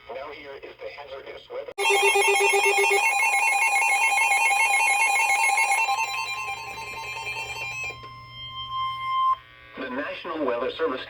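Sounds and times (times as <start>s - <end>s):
fast warbling alert tone: 1.8s - 7.8s
steady high alarm tone: 1.8s - 9.5s.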